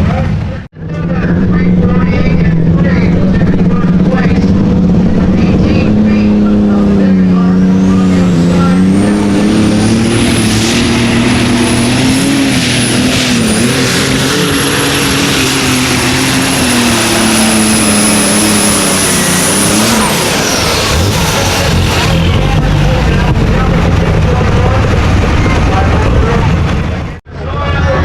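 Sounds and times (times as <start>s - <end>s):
high steady whine: 0.0s - 28.0s
tractor engine running hard: 0.0s - 28.0s.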